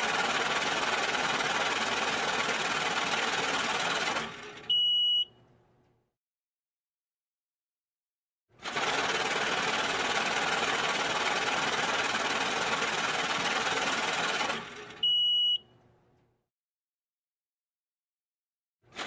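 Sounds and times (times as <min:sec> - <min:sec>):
short high-pitched beep: 0:04.7 - 0:05.3, 0:15.0 - 0:15.6.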